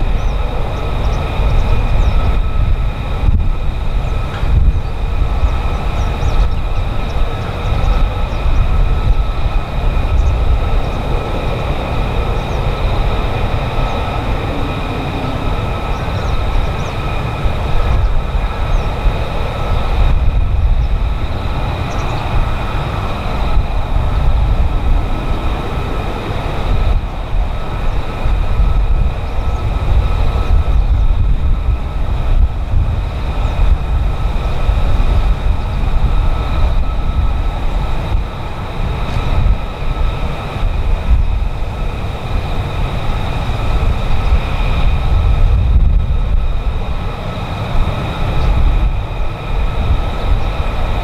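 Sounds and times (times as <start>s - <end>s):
jet engine running: 0.0s - 51.0s.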